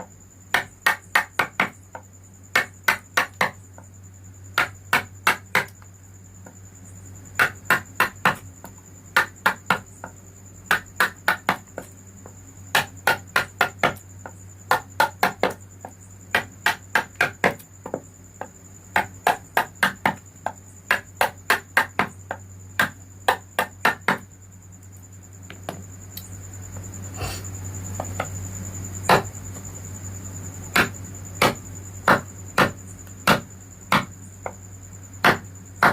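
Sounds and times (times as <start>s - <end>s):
hammer striking chisel into wood: 30.7s - 34.1s, 35.2s - 35.9s.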